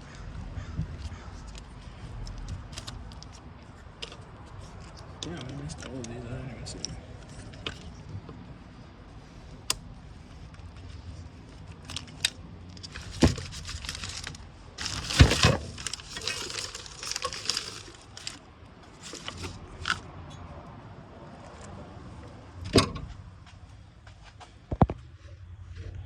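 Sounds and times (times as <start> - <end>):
wiring loom rustling and scraping: 10.6 - 20.1.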